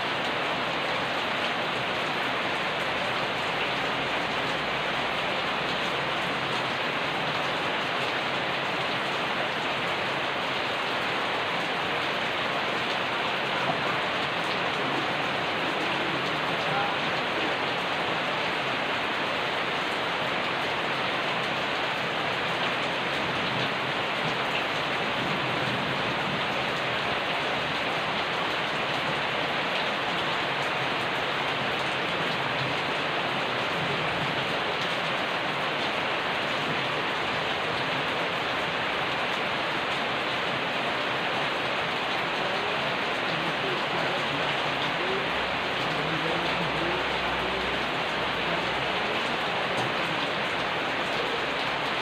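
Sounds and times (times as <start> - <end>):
rain falling on a surface: 0.0 - 52.0.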